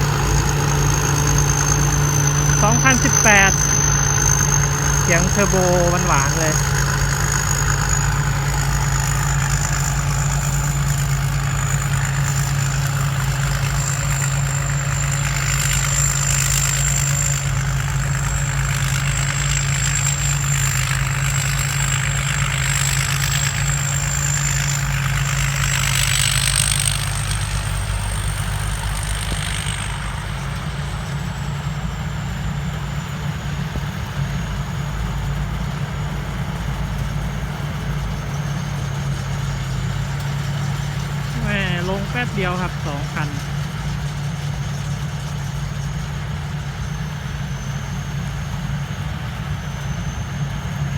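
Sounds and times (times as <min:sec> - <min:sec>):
turbo whistle: 0:00.0 - 0:10.6
diesel engine drone: 0:00.0 - 0:50.9.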